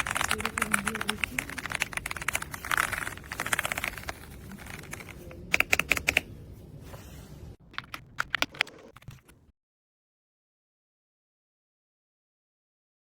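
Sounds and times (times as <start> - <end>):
mechanical keyboard typing: 0.0 - 6.3, 7.7 - 9.4.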